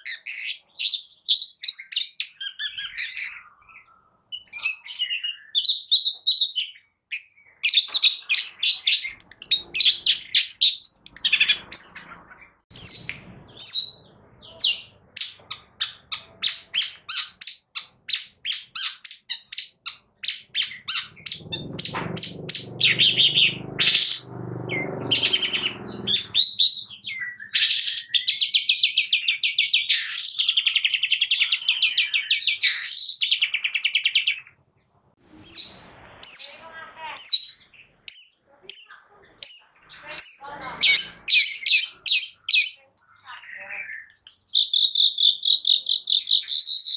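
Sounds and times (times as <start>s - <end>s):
shrike singing: 20.3s - 27.5s.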